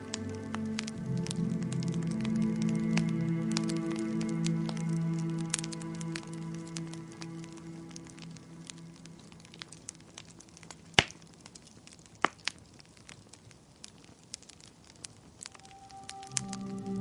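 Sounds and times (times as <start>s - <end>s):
soft music: 0.0s - 11.4s, 15.4s - 17.0s
wood fire crackling: 0.0s - 17.0s
loud fire pops: 7.9s - 16.6s.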